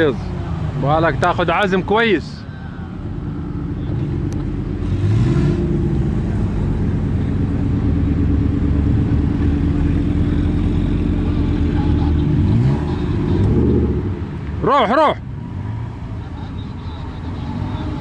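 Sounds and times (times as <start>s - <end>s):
vehicle engine revving hard: 4.0s - 7.0s, 8.1s - 14.4s.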